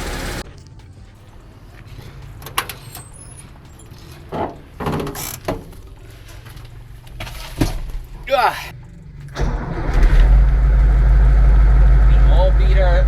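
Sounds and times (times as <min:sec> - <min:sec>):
low steady rumble: 0:08.0 - 0:13.0.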